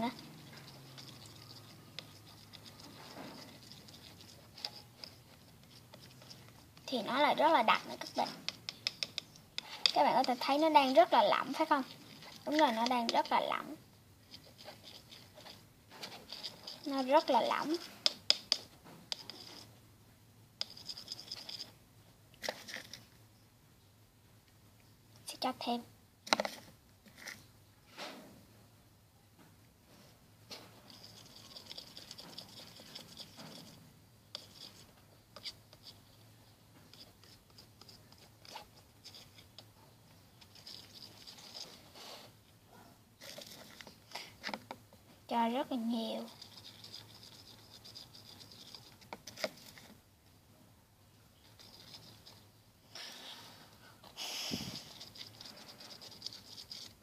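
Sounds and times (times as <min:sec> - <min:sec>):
utensil scraping in slime: 0:00.0 - 0:19.8, 0:20.6 - 0:21.8, 0:30.8 - 0:42.4, 0:43.2 - 0:50.0, 0:51.4 - 0:53.6, 0:54.2 - 0:57.0
utensil tapping container: 0:08.1 - 0:10.4.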